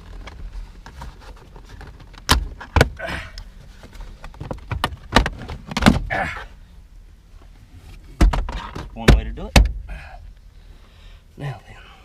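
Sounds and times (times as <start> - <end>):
plastic scraping and rustling: 0.0 - 2.9.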